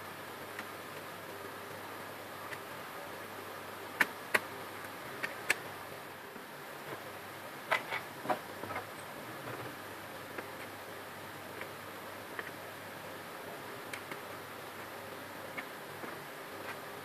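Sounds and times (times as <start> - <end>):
faint steady hiss: 0.0 - 17.0.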